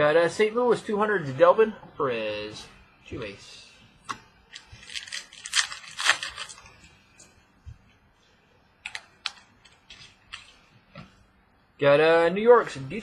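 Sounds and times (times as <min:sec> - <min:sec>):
trading cards rustling and sliding: 0:04.5 - 0:07.0, 0:08.9 - 0:10.6.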